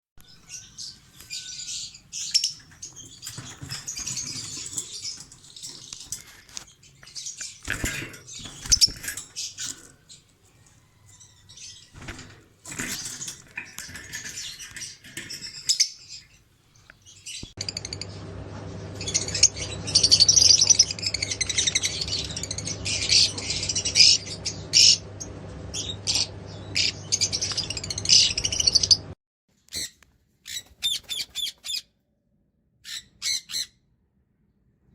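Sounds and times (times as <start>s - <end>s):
parrots chirping and chattering: 0.3s - 18.2s, 19.0s - 25.1s, 25.8s - 29.1s, 32.8s - 33.7s.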